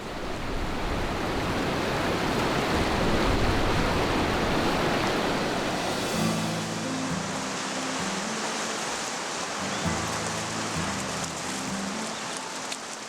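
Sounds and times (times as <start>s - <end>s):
rushing river water: 0.0s - 13.0s
low sustained music tones: 5.2s - 13.0s.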